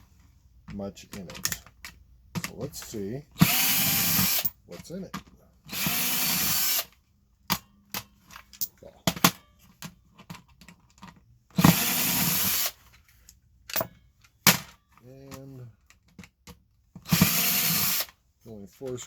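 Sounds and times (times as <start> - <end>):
clicks of screws and plastic: 0.6 - 3.0
power drill running: 3.4 - 4.5, 5.7 - 6.9, 11.6 - 12.8, 17.0 - 18.2.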